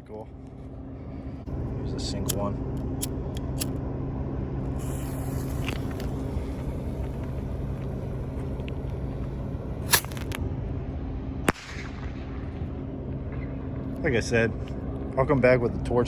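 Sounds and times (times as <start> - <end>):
steady low hum: 0.0 - 16.0
bottle rocket hiss: 4.8 - 7.5.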